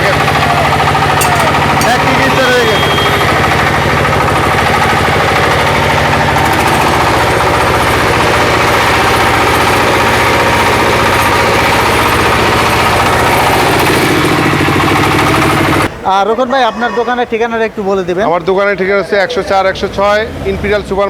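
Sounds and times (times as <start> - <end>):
diesel generator running: 0.0 - 16.5, 17.2 - 21.0.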